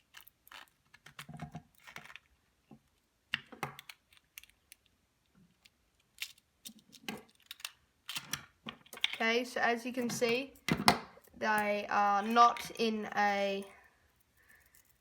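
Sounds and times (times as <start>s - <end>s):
magnet balls clicking together: 5.5s - 12.9s.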